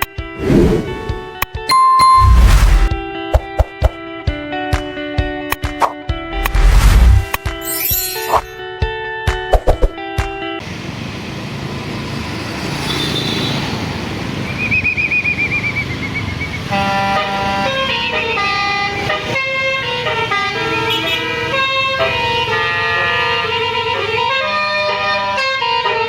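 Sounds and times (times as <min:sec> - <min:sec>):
bus engine and road noise: 0:00.0 - 0:01.4, 0:02.1 - 0:03.7, 0:06.3 - 0:07.4, 0:10.6 - 0:26.0
bus multi-tone horn: 0:16.5 - 0:26.0.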